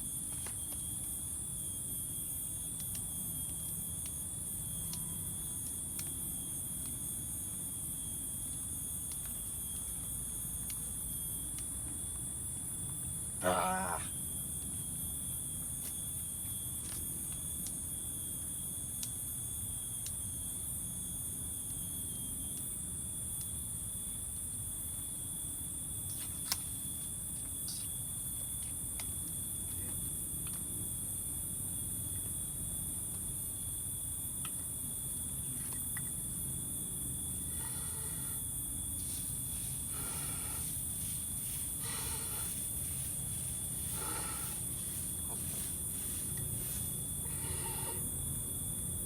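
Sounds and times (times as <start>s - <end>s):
high-pitched insect chorus: 0.0s - 49.0s
thin constant trill: 34.8s - 49.0s.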